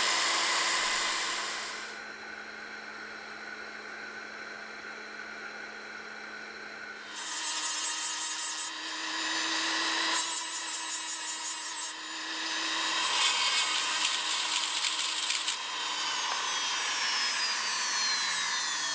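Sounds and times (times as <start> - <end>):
power tool grinding antler: 0.0 - 2.0, 7.0 - 18.9.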